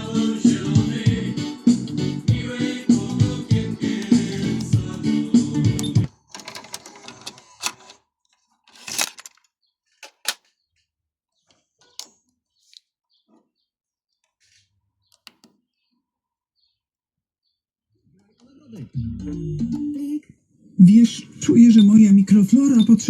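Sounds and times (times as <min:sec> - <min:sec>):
car radio music: 0:02.3 - 0:07.9
mechanical clicks and clunks: 0:05.8 - 0:08.0.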